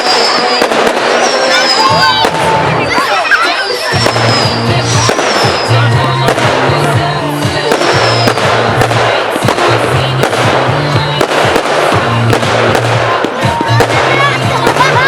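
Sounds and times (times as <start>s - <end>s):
fireworks banging and crackling: 0.0s - 15.0s
loud music with bass line: 3.9s - 15.0s.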